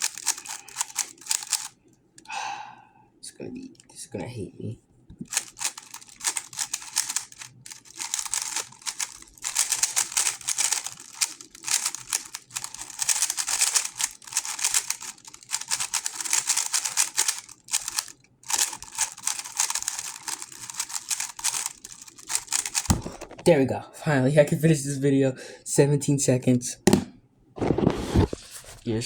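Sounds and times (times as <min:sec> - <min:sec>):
puzzle cube plastic clicks: 0:00.0 - 0:01.8, 0:05.3 - 0:23.5.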